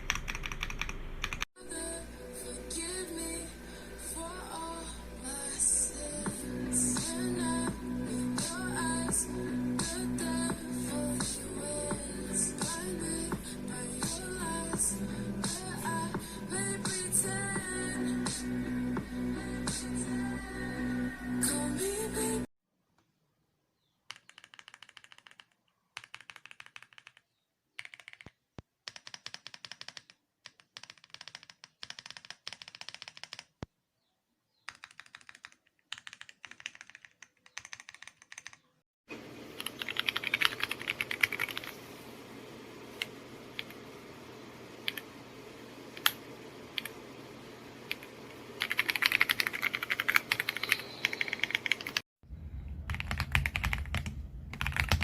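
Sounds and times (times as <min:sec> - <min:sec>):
mechanical keyboard typing: 0:00.0 - 0:01.5, 0:24.1 - 0:33.6, 0:34.7 - 0:38.6, 0:39.6 - 0:41.8, 0:47.9 - 0:52.0, 0:52.9 - 0:55.0
background hiss and hum: 0:39.1 - 0:55.0.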